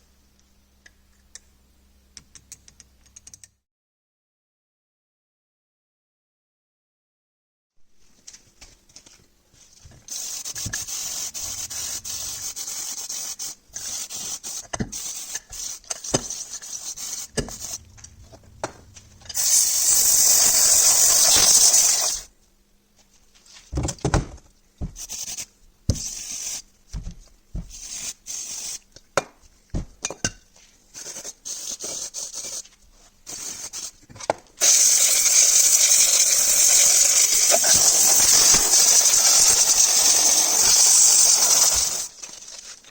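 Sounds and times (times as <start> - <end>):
hissing spray bursts: 10.1 - 17.9, 19.3 - 22.3, 34.6 - 42.2
scrubbing and scraping metal parts: 10.2 - 13.1.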